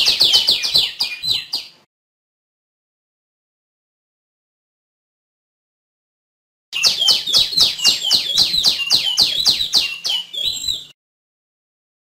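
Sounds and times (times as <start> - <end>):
songbird whistling high notes: 6.8 - 11.0.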